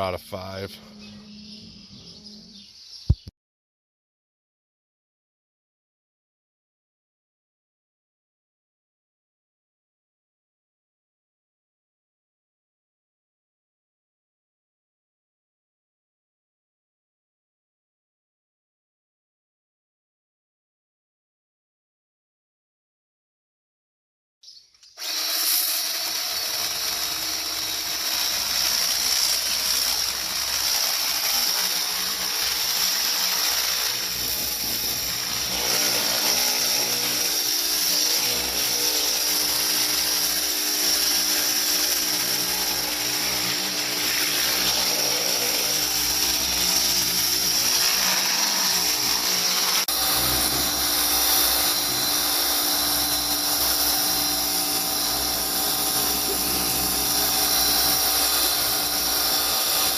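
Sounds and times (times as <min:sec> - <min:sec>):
pressure washer motor whine: 0:25.1 - 0:59.9.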